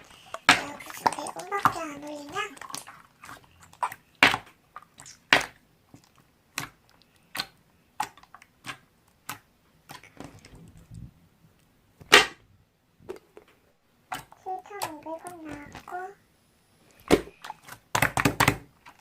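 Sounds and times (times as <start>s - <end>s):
slime clicking and popping: 3.7s - 10.2s.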